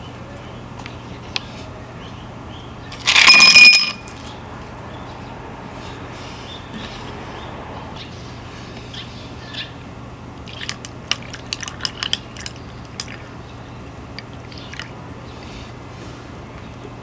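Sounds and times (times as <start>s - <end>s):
dog crunching dry food: 10.4s - 13.4s.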